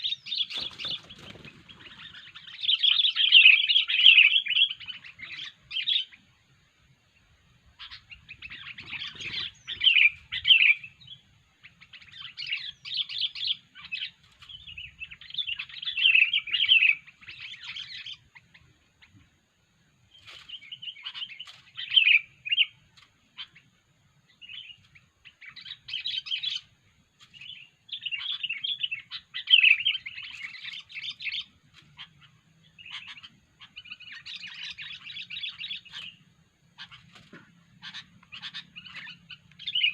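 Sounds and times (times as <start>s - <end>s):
bulbul chattering call: 7.8s - 14.1s, 27.4s - 39.9s.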